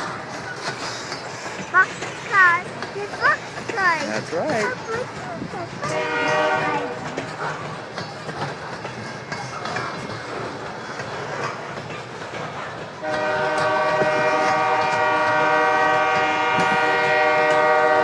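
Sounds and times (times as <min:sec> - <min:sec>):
freight train cars clattering: 0:00.0 - 0:18.0
locomotive air horn blast: 0:05.9 - 0:07.1, 0:13.0 - 0:18.0.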